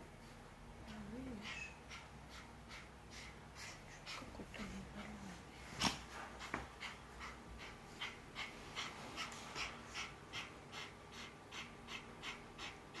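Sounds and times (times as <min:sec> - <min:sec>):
dog breathing fast: 0:00.9 - 0:13.0.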